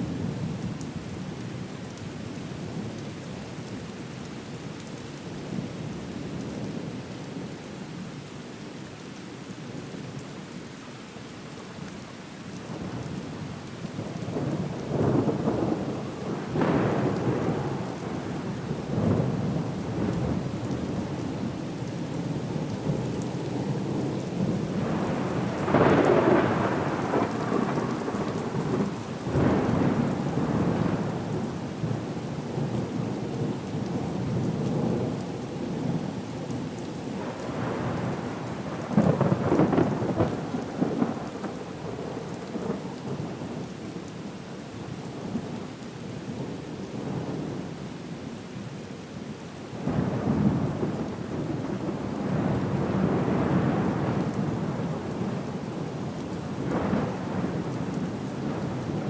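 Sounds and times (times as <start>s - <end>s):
steady rain: 0.0s - 59.0s
rolling thunder rumbles: 23.9s - 31.4s, 37.2s - 43.2s, 49.8s - 59.0s.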